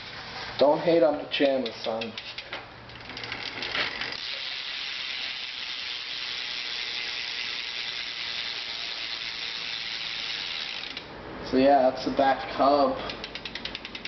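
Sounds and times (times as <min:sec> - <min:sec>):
bicycle freewheel ratcheting buzz: 0:01.7 - 0:11.1, 0:13.1 - 0:14.0.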